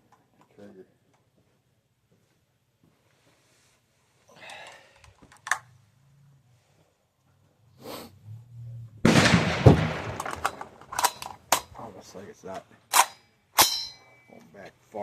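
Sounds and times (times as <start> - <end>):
rifle gunshot: 9.0 - 10.7
sharp metallic click: 12.9 - 14.0.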